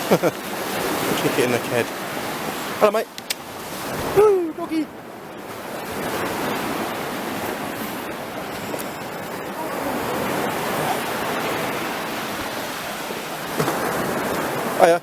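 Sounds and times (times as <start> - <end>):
sea waves washing on beach: 0.0 - 15.0.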